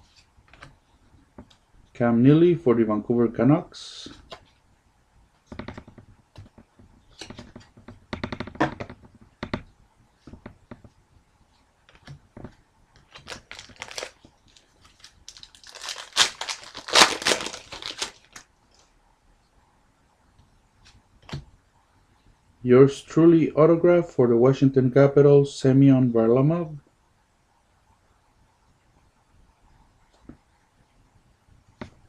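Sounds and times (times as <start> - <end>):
cards clicking and rustling: 13.0 - 18.4
foil wrapper crinkling and tearing: 13.1 - 18.4.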